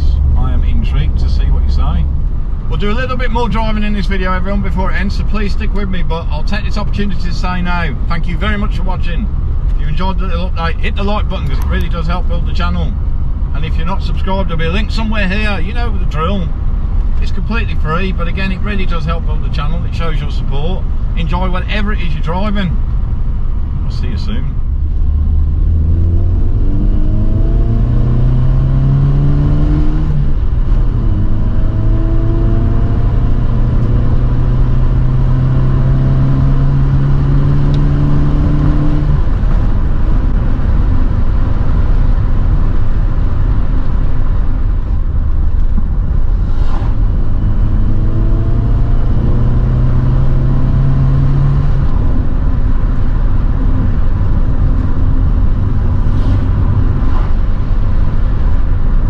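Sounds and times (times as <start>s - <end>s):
car engine accelerating: 0.0s - 59.0s.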